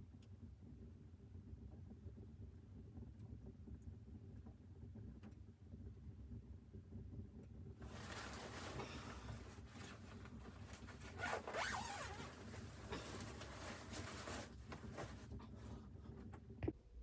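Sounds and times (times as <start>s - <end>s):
scratchy rasping and rustling: 7.8s - 16.3s.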